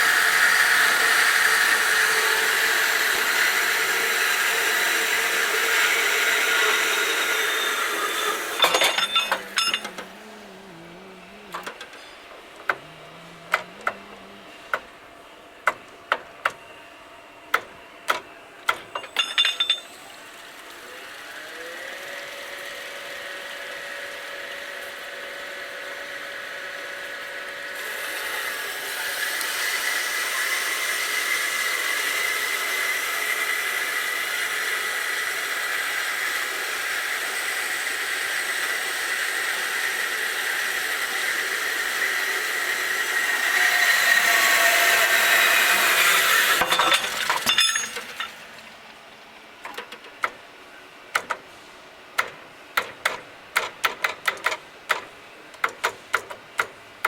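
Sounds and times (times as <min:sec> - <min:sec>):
saw blade whining cut: 0:00.0 - 0:14.9, 0:27.6 - 0:48.5.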